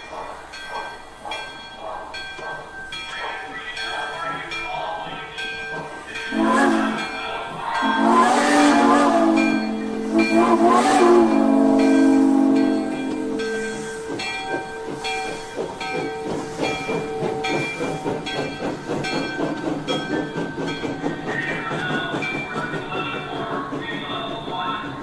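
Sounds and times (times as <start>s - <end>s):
steam exhaust chuffing: 0.0s - 25.0s
chime steam whistle: 6.2s - 18.3s.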